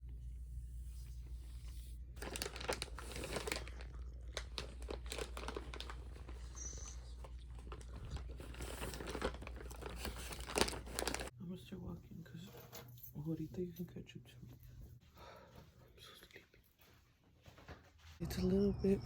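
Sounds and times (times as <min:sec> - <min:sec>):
steady low hum: 0:00.0 - 0:02.2, 0:18.2 - 0:19.0
plastic or paper crinkling: 0:02.2 - 0:11.3.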